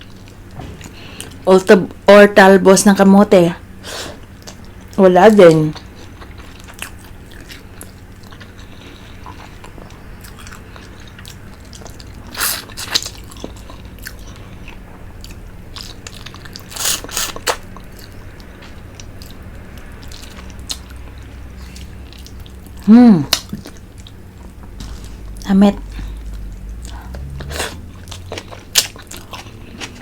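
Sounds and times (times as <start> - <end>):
chewing with wet clicks: 4.4 - 30.0
slurping soup: 27.1 - 28.5.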